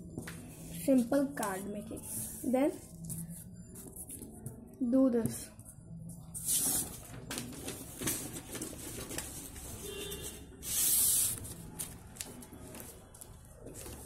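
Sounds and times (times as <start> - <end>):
paper hissing swish: 6.4 - 7.1, 10.6 - 11.6
paper rustling and folding: 6.4 - 14.0.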